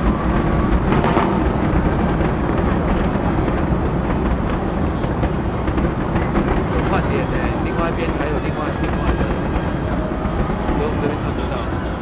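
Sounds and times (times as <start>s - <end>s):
fireworks bursting: 0.0s - 12.0s.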